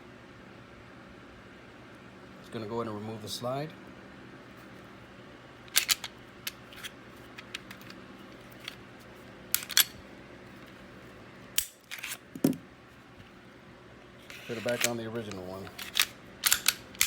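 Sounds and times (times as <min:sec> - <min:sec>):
pistol slide metal clicks: 0:11.6 - 0:12.2, 0:14.5 - 0:17.0.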